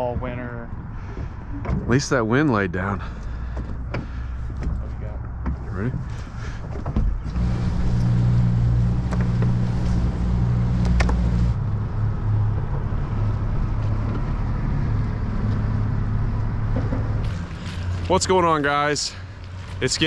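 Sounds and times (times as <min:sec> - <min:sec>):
motor engine humming: 0:07.2 - 0:11.7.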